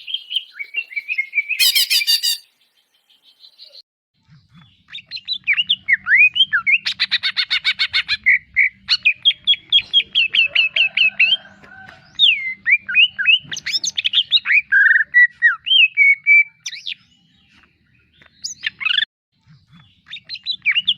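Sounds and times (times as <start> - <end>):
bird singing whistled notes: 0.0 - 3.8
bird harsh chattering: 1.5 - 2.5.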